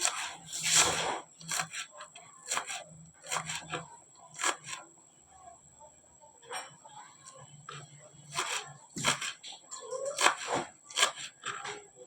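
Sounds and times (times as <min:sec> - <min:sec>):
knife chopping on cutting board: 0:00.0 - 0:04.8, 0:07.7 - 0:11.8
knife scraping cutting board: 0:00.0 - 0:04.8, 0:06.4 - 0:11.8.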